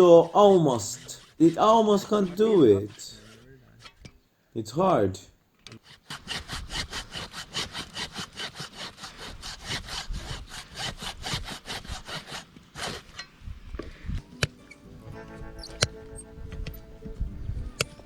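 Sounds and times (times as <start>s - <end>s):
saw cutting hoof horn: 0.0s - 4.1s, 5.8s - 13.2s, 14.7s - 16.8s.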